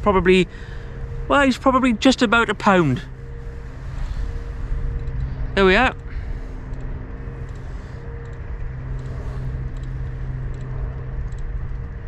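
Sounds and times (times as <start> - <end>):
distant engine hum: 0.0 - 12.0
low rumbling noise: 0.0 - 12.0
faint ticks: 6.7 - 11.9.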